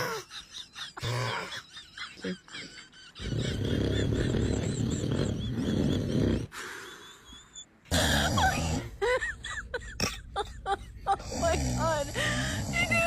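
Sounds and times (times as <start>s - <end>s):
man snoring loudly: 3.2s - 6.6s, 11.2s - 13.0s.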